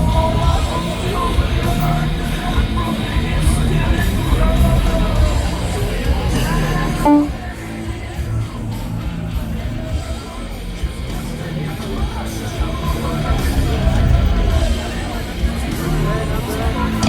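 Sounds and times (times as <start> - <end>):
distorted electric guitar: 6.8 - 7.5.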